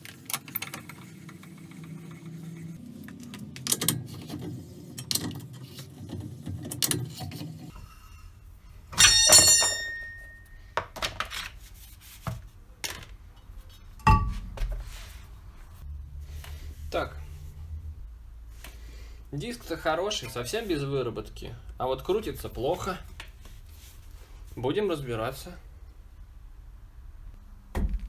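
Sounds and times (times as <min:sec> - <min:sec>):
loud ringing metal clang: 0:08.9 - 0:10.6
metal tools knocking and clinking: 0:08.9 - 0:10.6.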